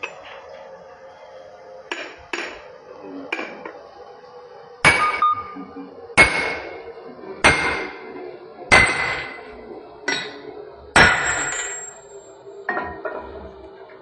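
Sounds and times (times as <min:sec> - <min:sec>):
hammer striking metal: 0:01.9 - 0:02.7, 0:04.8 - 0:05.6, 0:06.2 - 0:06.8, 0:07.4 - 0:08.1, 0:08.7 - 0:09.5, 0:10.1 - 0:10.4, 0:11.0 - 0:13.2.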